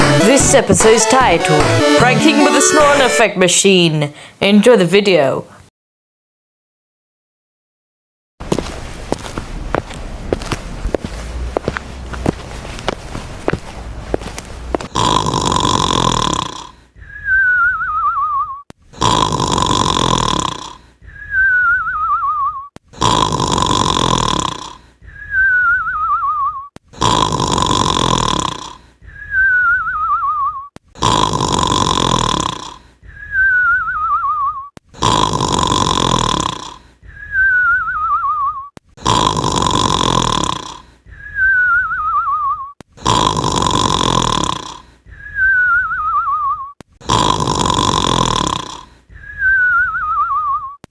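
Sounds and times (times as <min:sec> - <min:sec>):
cartoon snore: 0:14.9 - 0:17.5, 0:18.9 - 0:25.4, 0:26.2 - 0:41.6, 0:42.9 - 0:45.6, 0:46.5 - 0:50.8
warbling falling whistle: 0:17.0 - 0:18.6, 0:21.3 - 0:22.7, 0:25.2 - 0:26.7, 0:29.3 - 0:30.7, 0:33.3 - 0:34.7, 0:37.3 - 0:38.7, 0:41.3 - 0:42.7, 0:45.2 - 0:46.7, 0:49.2 - 0:50.8.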